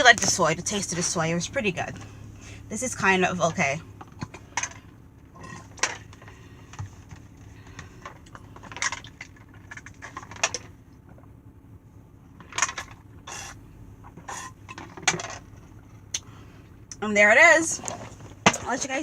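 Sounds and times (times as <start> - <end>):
low steady hum: 0.0 - 19.0
handling clicks and rattles: 4.0 - 11.3, 12.4 - 13.1, 14.1 - 16.1.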